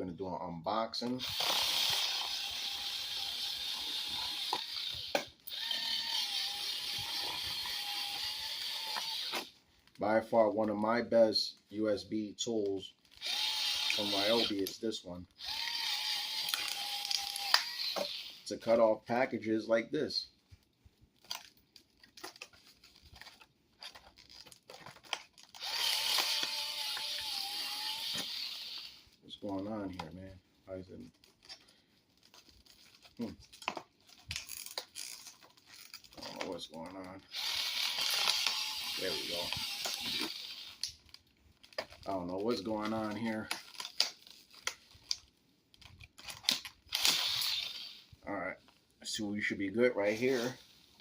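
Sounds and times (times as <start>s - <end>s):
small motor whining: 1.2s - 9.5s, 13.2s - 14.6s, 15.4s - 18.4s, 25.6s - 29.0s, 37.3s - 41.0s, 46.9s - 48.1s
blade cutting cardboard: 25.6s - 29.0s, 37.3s - 40.9s.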